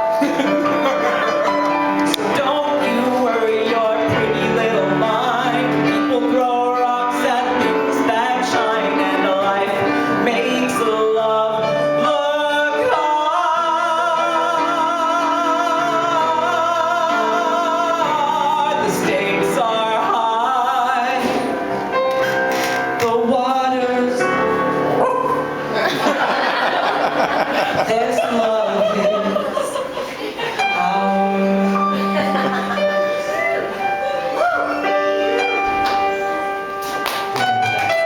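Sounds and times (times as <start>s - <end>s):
instrumental accompaniment: 0.0s - 38.0s
man singing a ballad: 2.0s - 21.9s, 22.6s - 25.4s, 27.4s - 29.8s, 30.6s - 32.9s.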